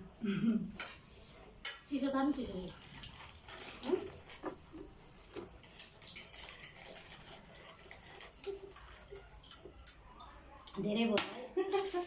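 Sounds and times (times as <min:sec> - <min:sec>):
people slurping noodles: 0:02.6 - 0:09.9.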